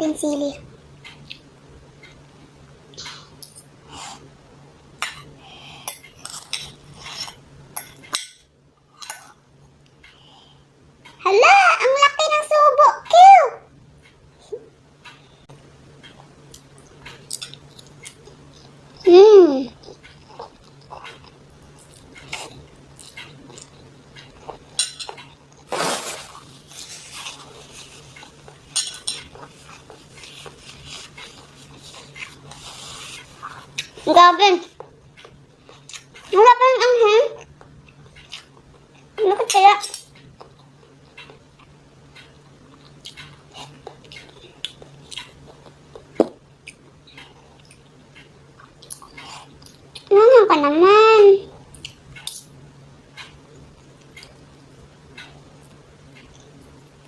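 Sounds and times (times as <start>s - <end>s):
faint steady hum: 0.0s - 57.0s
person chewing noodles: 19.8s - 34.1s, 37.4s - 39.1s, 40.4s - 50.1s.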